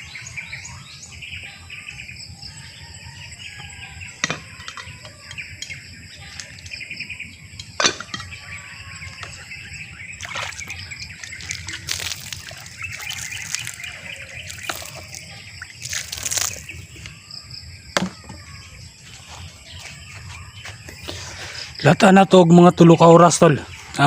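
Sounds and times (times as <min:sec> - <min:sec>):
bird calls: 0:00.0 - 0:24.0
insects chirping: 0:00.0 - 0:24.0
water sloshing and trickling: 0:09.0 - 0:17.4.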